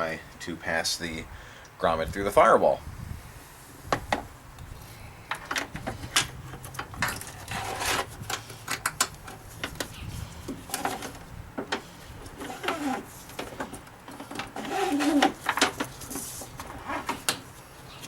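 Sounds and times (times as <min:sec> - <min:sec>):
clicks and knocks of handling: 0:05.3 - 0:17.6.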